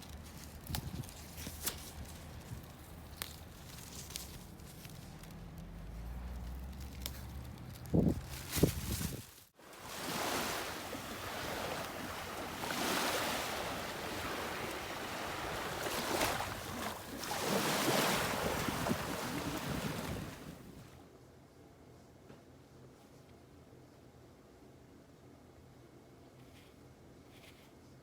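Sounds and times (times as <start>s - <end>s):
wind on microphone: 7.8s - 9.3s, 10.2s - 20.9s
sea waves washing onto beach: 9.6s - 20.9s.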